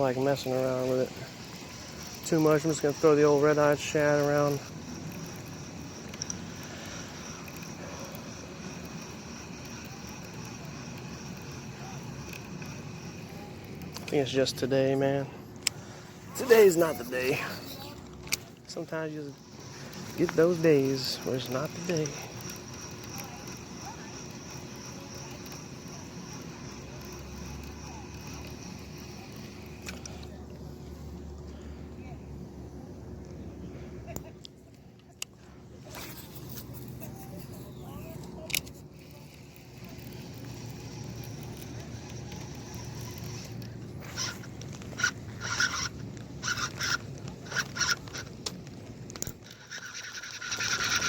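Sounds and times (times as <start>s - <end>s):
fishing reel whirring: 0.0s - 31.2s, 35.8s - 51.0s
high thin insect drone: 0.0s - 32.2s, 35.8s - 48.3s, 49.2s - 51.0s
low outdoor hum: 0.0s - 51.0s.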